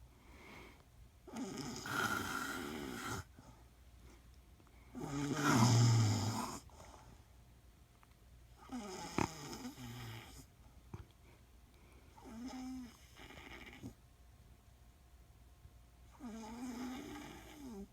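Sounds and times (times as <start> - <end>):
woman snoring: 1.3 - 3.3, 5.0 - 6.7, 8.6 - 10.4, 12.2 - 13.9, 16.2 - 17.9.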